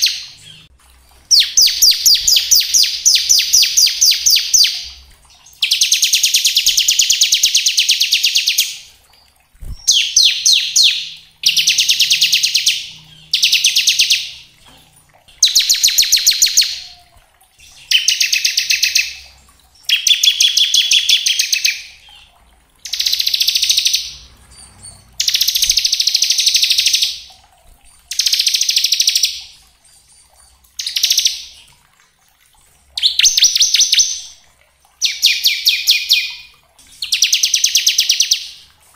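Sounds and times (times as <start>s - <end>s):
bird singing fast trills: 33.0s - 34.3s.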